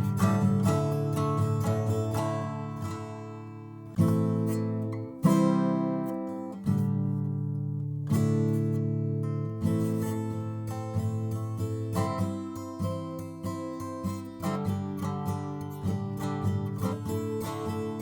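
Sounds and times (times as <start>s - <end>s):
acoustic guitar strumming chords: 0.0s - 18.0s.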